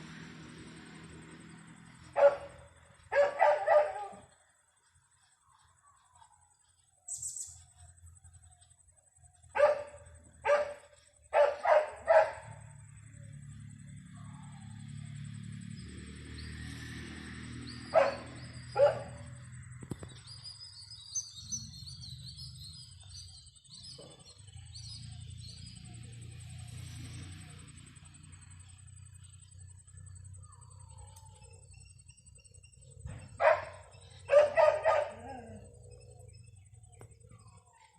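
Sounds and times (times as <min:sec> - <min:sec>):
dog barking: 0:02.2 - 0:04.3, 0:09.5 - 0:12.6, 0:17.9 - 0:19.3, 0:33.4 - 0:35.7
high bird chirps: 0:07.1 - 0:07.7.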